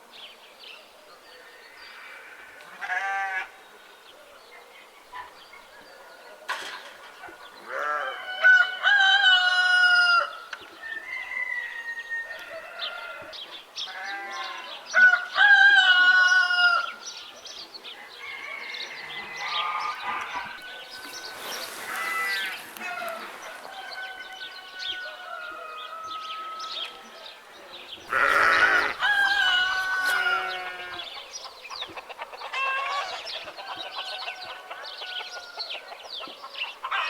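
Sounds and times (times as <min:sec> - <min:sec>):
rooster crowing: 0:07.8 - 0:13.3, 0:18.0 - 0:26.9, 0:28.1 - 0:31.1
short chicken calls: 0:19.4 - 0:24.4.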